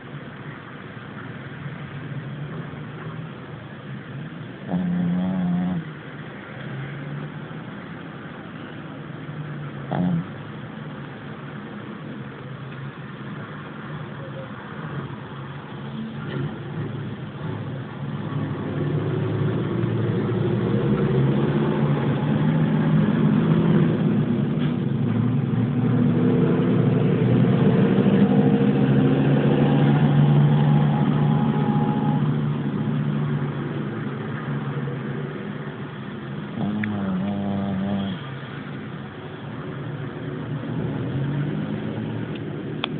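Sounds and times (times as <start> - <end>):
pet snoring: 4.6 - 6.0, 9.9 - 10.4, 36.5 - 38.6.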